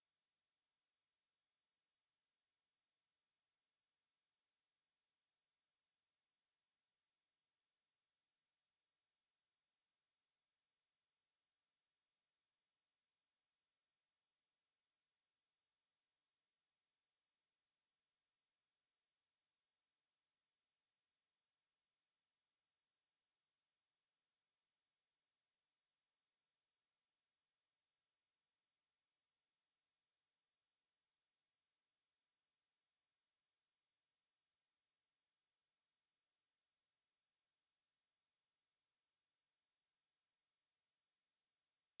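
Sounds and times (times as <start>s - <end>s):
high-pitched sine-wave test tone: 37.3s - 42.0s.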